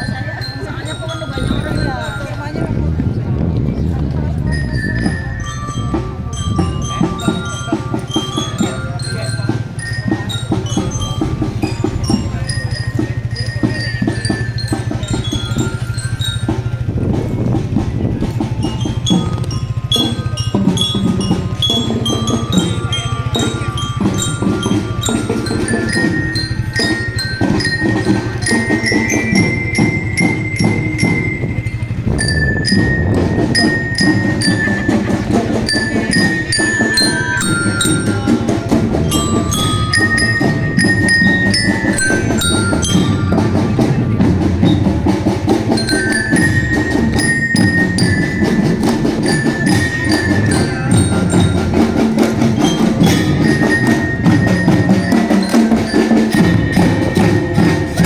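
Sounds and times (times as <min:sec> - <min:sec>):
bell-lyra melody: 0:00.0 - 0:58.0
marching drums: 0:00.0 - 0:58.0.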